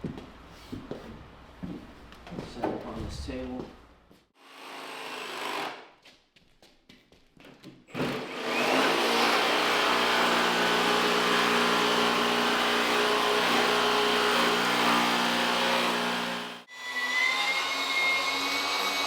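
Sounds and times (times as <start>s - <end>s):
power tool motor running: 7.9s - 16.7s.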